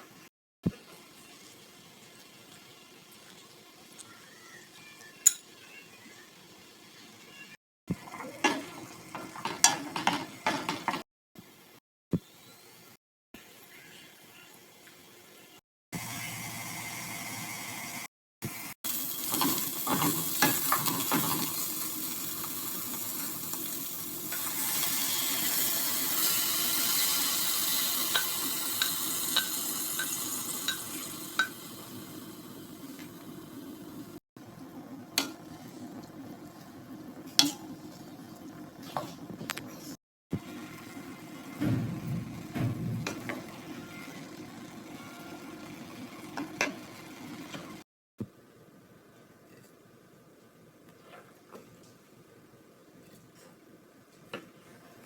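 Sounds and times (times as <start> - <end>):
food sizzling in oil: 16.0 - 39.4, 40.4 - 47.8.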